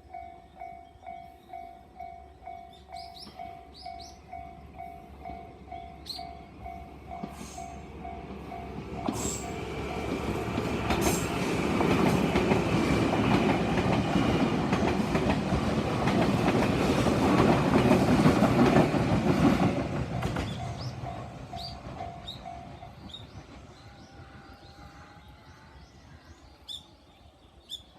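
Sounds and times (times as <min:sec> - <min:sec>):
level-crossing bell dinging: 0:00.0 - 0:08.8
train wheel clatter: 0:05.7 - 0:23.8.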